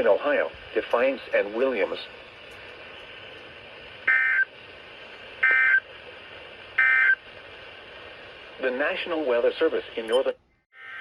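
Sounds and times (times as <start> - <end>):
faint radio hiss: 0.0 - 10.6
digital data tone bursts: 6.8 - 7.2.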